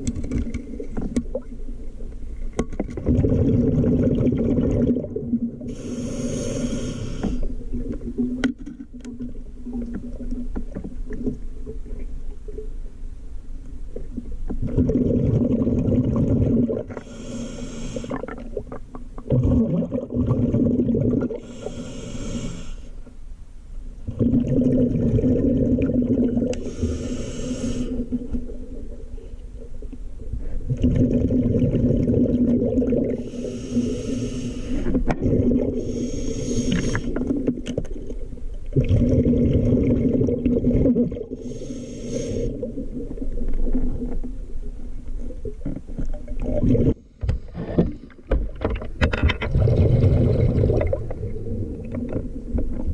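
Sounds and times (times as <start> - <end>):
rumble of exhaled bubbles: 2.8 - 5.8, 14.0 - 17.2, 18.1 - 21.5, 24.0 - 26.8, 28.0 - 33.6, 34.8 - 41.6, 42.4 - 48.3, 49.0 - 52.9
regulator hissing inhale: 5.7 - 7.6, 17.0 - 18.3, 21.4 - 23.0, 26.6 - 28.3, 33.2 - 35.1, 35.7 - 37.2, 41.4 - 42.6.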